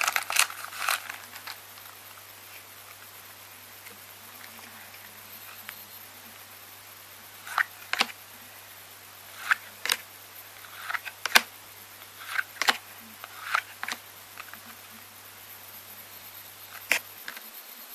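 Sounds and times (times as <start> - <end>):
cards sliding and snapping: 0.0 - 2.0, 7.4 - 8.2, 9.3 - 14.8
faint electrical hum: 0.0 - 17.9.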